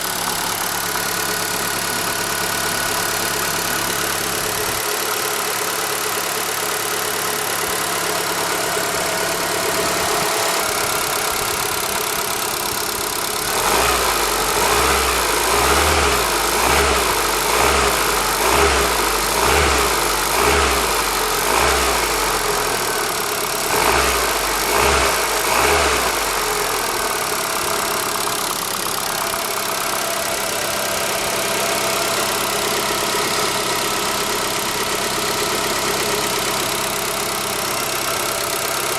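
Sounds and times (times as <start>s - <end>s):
engine ticking: 0.0s - 38.9s
petrol engine idling: 0.0s - 38.9s.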